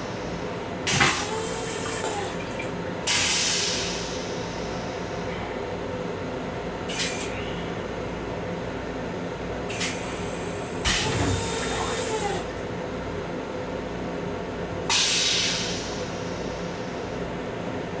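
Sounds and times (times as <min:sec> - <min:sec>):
loud hissing rush of air: 0:14.9 - 0:16.9.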